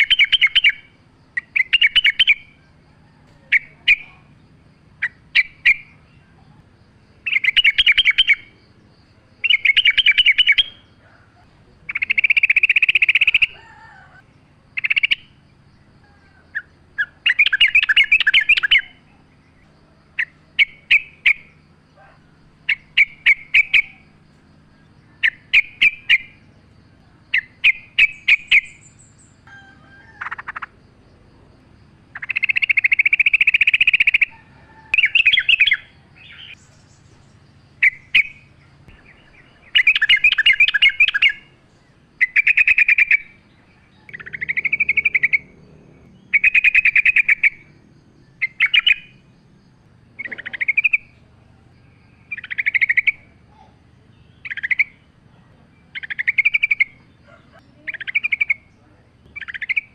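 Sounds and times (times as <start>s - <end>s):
faint low hum: 0.0s - 59.9s
bulbul bubbly chattering song: 11.8s - 13.6s, 32.1s - 34.3s, 37.7s - 41.6s, 44.1s - 45.6s, 50.1s - 51.4s, 57.6s - 59.9s.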